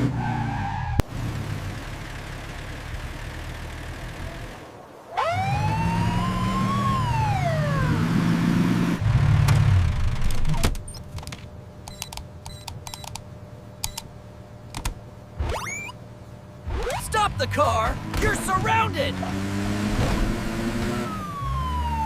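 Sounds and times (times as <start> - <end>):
vehicle engine rumble: 0.0 - 22.0
police siren wailing: 5.1 - 8.4, 20.8 - 22.0.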